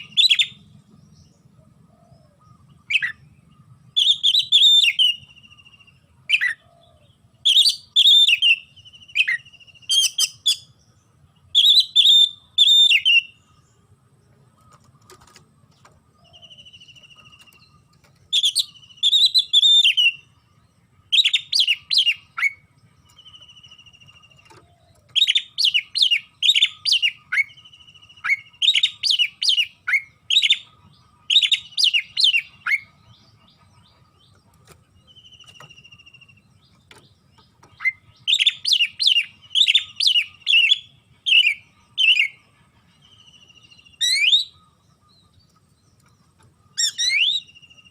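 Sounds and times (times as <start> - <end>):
bird singing whistled notes: 0.0 - 14.0, 16.1 - 47.9.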